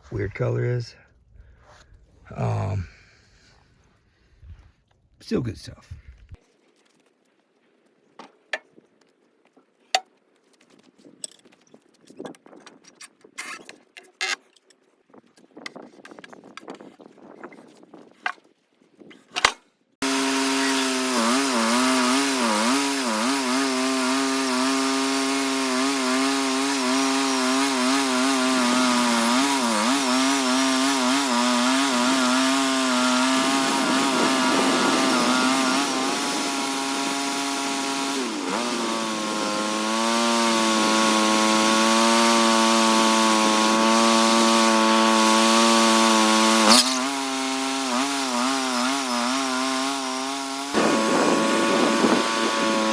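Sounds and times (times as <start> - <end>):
chainsaw cutting log: 19.2 - 52.9.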